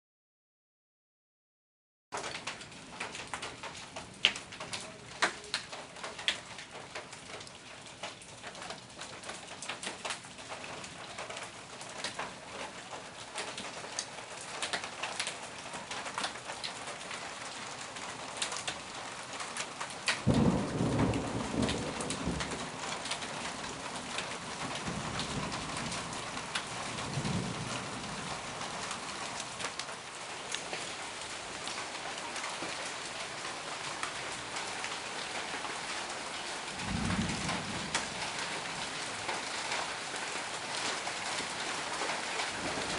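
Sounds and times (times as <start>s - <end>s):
rain on hard surfaces: 2.1s - 42.9s
sharp raindrop hits: 19.4s - 42.9s
thunder rumbling: 20.2s - 29.7s, 36.6s - 39.7s, 42.0s - 42.9s.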